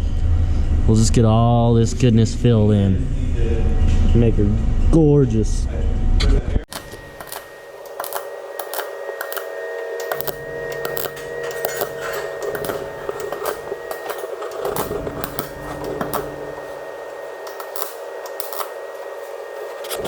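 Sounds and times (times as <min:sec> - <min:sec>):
steady welder hum: 0:06.7 - 0:20.0
welder crackling and popping: 0:06.7 - 0:20.0.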